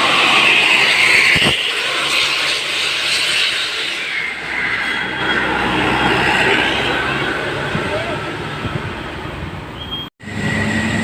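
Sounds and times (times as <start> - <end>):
vehicle driving past: 4.4 - 9.4.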